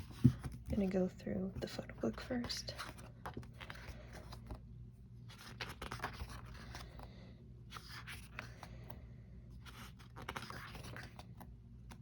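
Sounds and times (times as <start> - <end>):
paper pages rustling and turning: 1.6 - 4.6, 5.2 - 7.1, 7.7 - 12.0.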